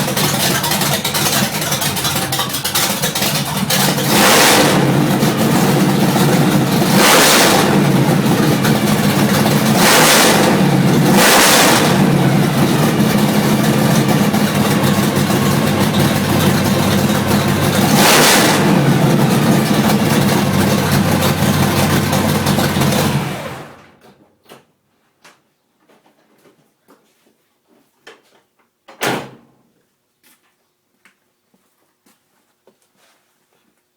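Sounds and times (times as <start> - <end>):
car engine idling roughly: 0.0 - 23.9.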